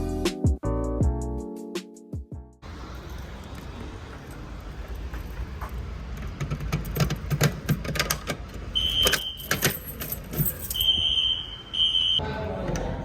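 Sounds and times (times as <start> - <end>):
sharp clicks and rattling knocks: 6.1 - 10.6
fire alarm horn tone: 8.8 - 9.7, 10.7 - 12.2.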